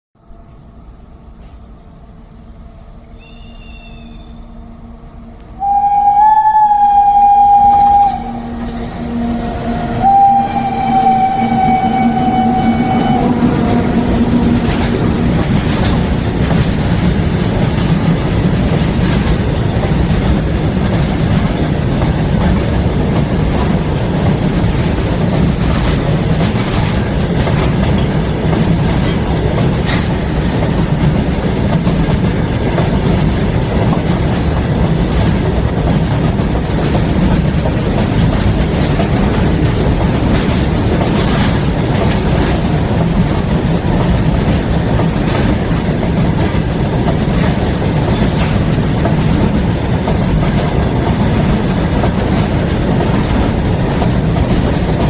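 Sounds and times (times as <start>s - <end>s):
train running on rails: 0.2s - 55.0s
locomotive horn: 5.6s - 15.4s.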